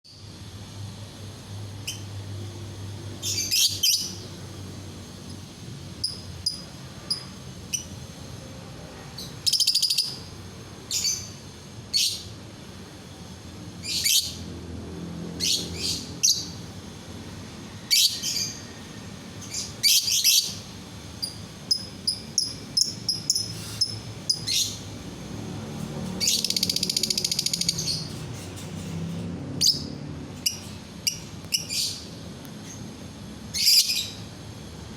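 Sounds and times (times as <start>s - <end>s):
lovebird shrill chirping: 3.2s - 4.2s, 9.4s - 10.2s, 19.4s - 20.6s, 21.2s - 24.8s, 26.2s - 28.1s
bird rapid trill: 9.4s - 10.3s, 19.4s - 24.9s, 26.2s - 28.2s.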